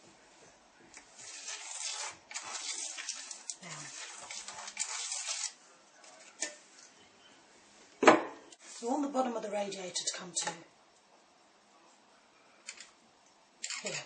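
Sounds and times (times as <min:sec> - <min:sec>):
pencil scratching on plaster wall: 0:01.2 - 0:05.6.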